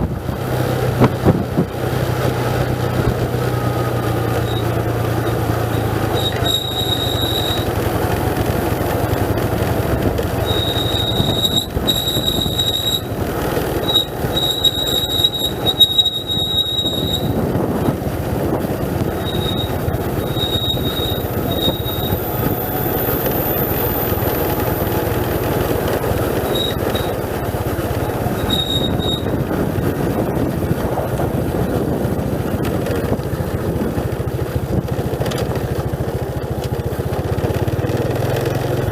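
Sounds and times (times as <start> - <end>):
engine and road noise: 0.0 - 38.9
vehicle brakes squealing: 3.6 - 17.8, 19.0 - 29.6.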